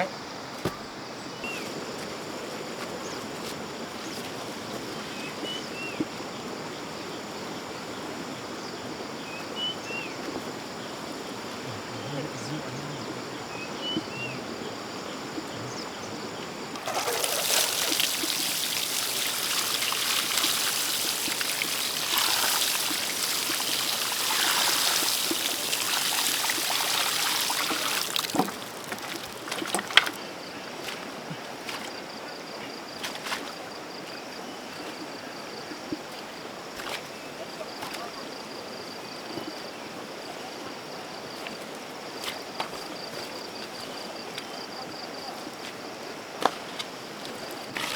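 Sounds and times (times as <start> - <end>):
water pouring and splashing: 16.7 - 31.1, 47.2 - 47.9.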